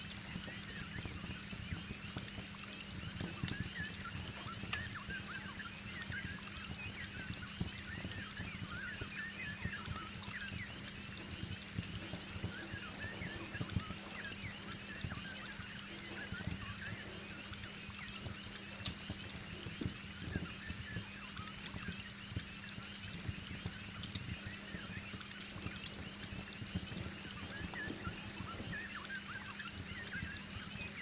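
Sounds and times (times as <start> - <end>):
low steady hum: 0.0 - 31.0
wood fire crackling: 0.0 - 31.0
heavy rain pouring: 7.6 - 21.8, 23.2 - 31.0.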